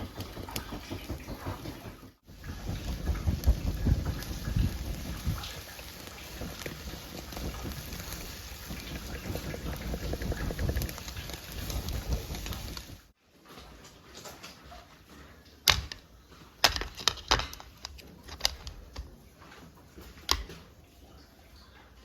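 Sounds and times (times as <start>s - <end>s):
steady rain: 2.3s - 13.1s.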